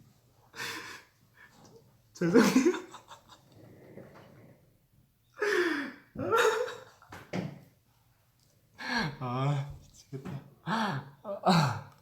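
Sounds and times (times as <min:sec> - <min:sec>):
man laughing: 0:02.2 - 0:03.4.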